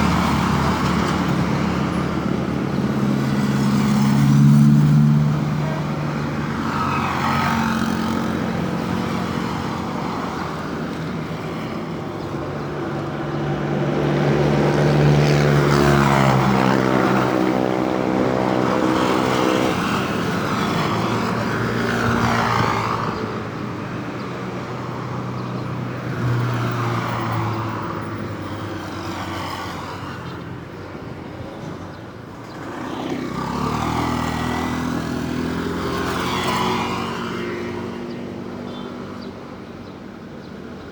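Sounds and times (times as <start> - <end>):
heavy engine: 0.0 - 29.3
vehicles passing: 0.0 - 40.9.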